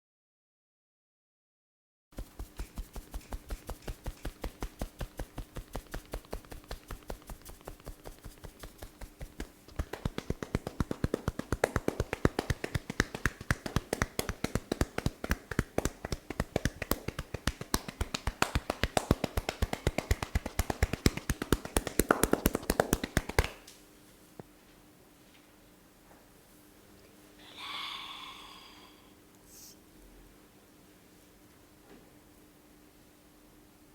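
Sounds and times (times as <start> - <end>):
hands drumming on a body: 2.2 - 23.6.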